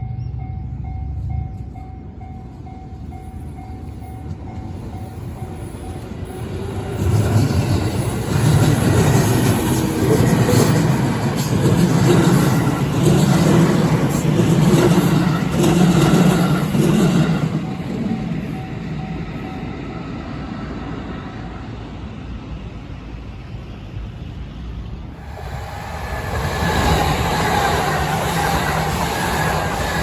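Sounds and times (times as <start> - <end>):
crossing warning bell: 0.0 - 20.4
train wheels clattering on rails: 1.2 - 19.6, 25.4 - 30.0.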